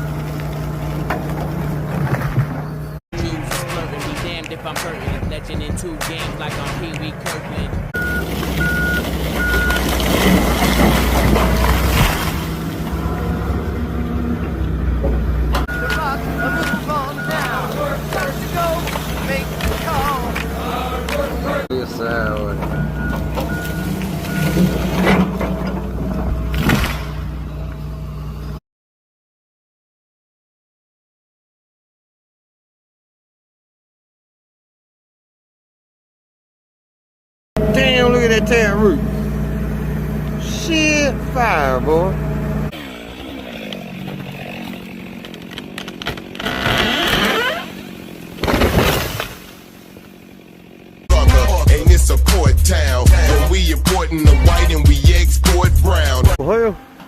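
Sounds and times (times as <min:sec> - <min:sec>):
excavator engine running: 0:00.0 - 0:28.6, 0:37.6 - 0:57.0
wood cracking and crashing: 0:08.2 - 0:13.1, 0:15.8 - 0:21.2, 0:43.6 - 0:50.3.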